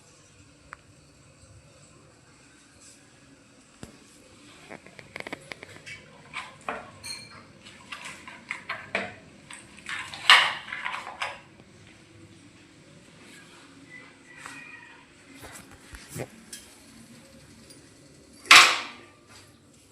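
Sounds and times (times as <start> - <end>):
hard objects clicking and clattering: 4.7 - 11.5.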